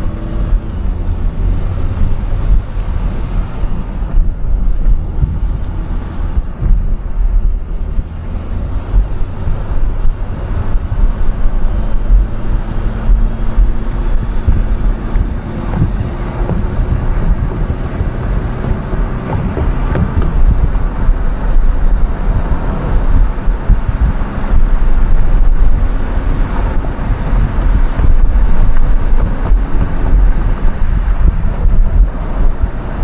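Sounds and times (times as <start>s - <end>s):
car driving rumble: 0.0s - 33.0s
faint low engine hum: 0.0s - 33.0s
wind buffeting microphone: 0.0s - 33.0s.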